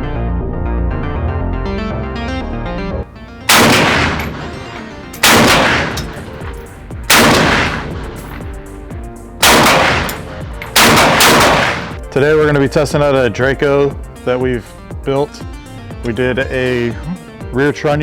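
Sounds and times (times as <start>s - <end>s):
music: 0.0s - 18.0s
pistol shots with echo: 3.4s - 8.6s, 9.4s - 12.0s.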